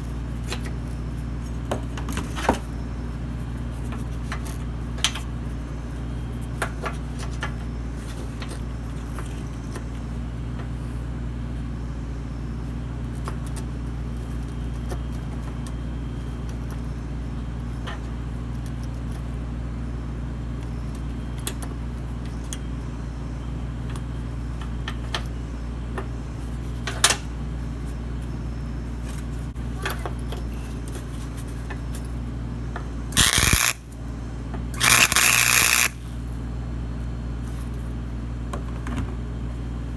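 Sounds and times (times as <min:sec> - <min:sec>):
steady low hum: 0:00.0 - 0:39.9
loud harsh burst: 0:33.2 - 0:33.8, 0:34.8 - 0:36.0.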